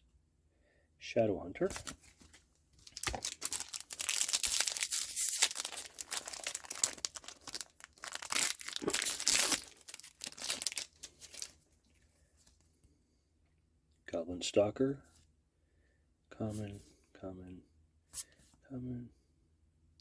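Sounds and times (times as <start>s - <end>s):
wrapper crinkling and tearing: 2.8s - 11.6s.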